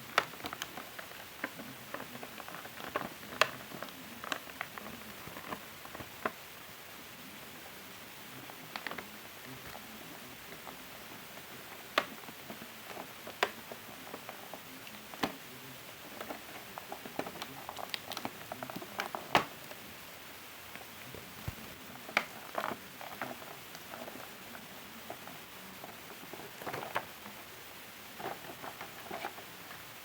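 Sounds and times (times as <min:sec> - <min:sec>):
plastic snaps: 0:17.2 - 0:19.6.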